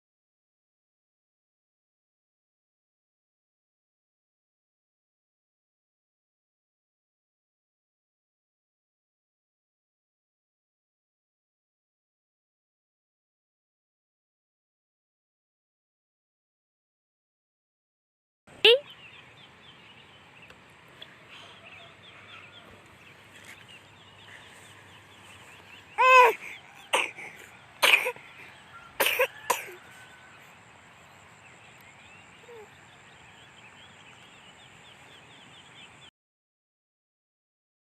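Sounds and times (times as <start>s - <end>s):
faint high chirping: 21.2s - 36.0s
child coughing: 26.0s - 28.2s, 29.0s - 29.8s.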